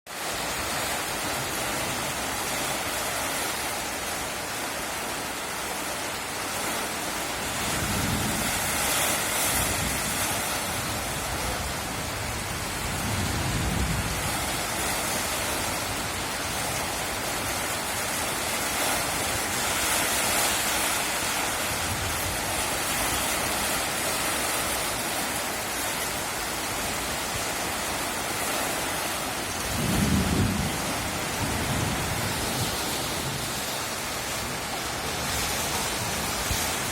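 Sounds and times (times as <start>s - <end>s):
heavy rain: 0.1s - 36.9s
distant thunder rolling: 29.5s - 34.7s.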